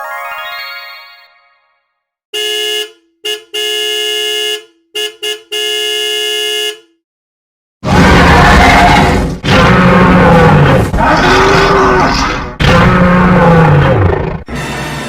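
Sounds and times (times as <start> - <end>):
horn blasts: 2.3 - 7.0.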